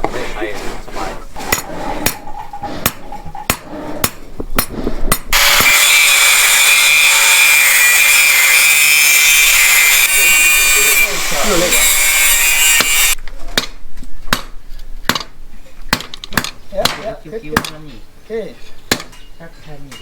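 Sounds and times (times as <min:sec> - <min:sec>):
electric grinder whining: 0:05.3 - 0:13.2.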